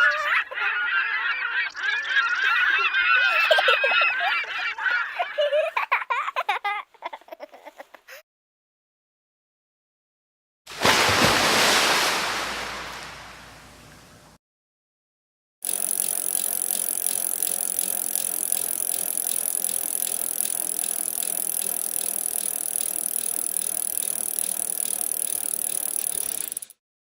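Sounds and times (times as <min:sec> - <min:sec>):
rapid mechanical rattling: 0:15.6 - 0:26.8.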